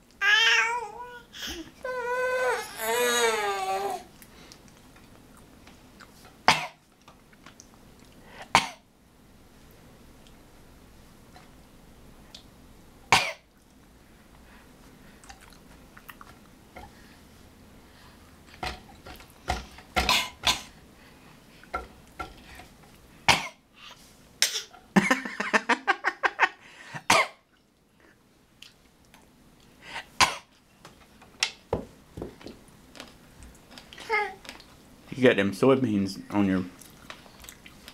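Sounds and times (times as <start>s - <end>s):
young child coughing: 6.5s - 6.8s, 13.1s - 13.4s, 23.3s - 23.6s, 24.4s - 24.8s, 27.1s - 27.4s.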